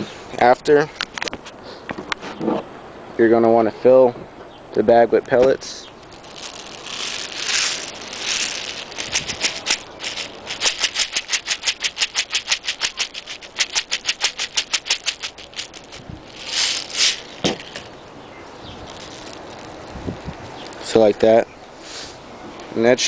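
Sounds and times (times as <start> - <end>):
plastic bag rustling: 6.0 - 18.0, 18.6 - 20.6
plastic pellets clicking into bag: 6.1 - 17.9, 18.9 - 19.8.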